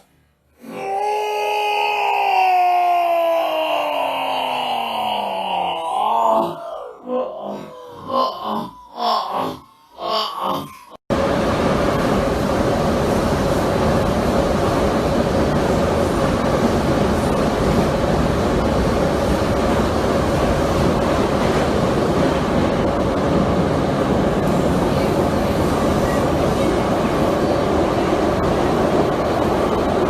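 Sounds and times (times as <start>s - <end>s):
loud rumbling with mid-pitched hum: 11.1s - 30.0s.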